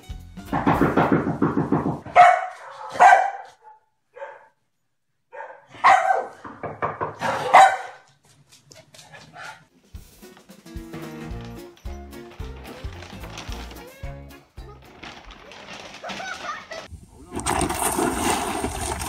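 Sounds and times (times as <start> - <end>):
dog barking: 2.0 - 4.6, 5.3 - 6.5, 7.2 - 8.2, 9.2 - 9.7.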